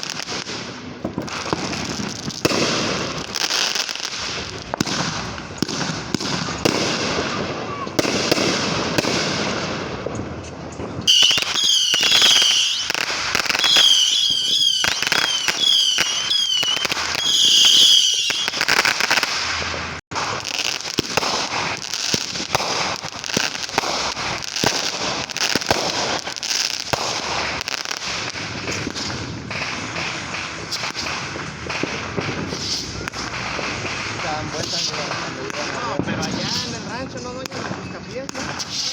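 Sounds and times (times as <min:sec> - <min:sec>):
fireworks popping and crackling: 0:00.0 - 0:38.9
high wavering firework whistle: 0:11.0 - 0:19.4, 0:32.5 - 0:33.8.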